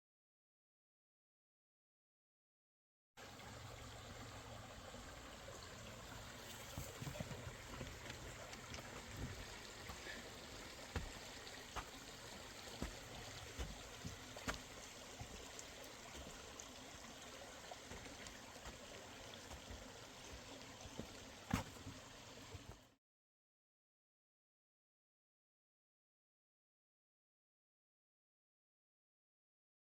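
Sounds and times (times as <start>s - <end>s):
creek water running: 3.2s - 23.0s.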